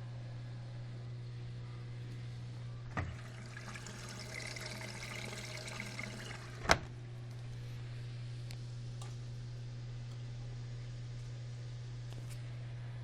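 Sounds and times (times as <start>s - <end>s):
steady low hum: 0.0s - 13.0s
water flowing into machine: 2.9s - 6.8s.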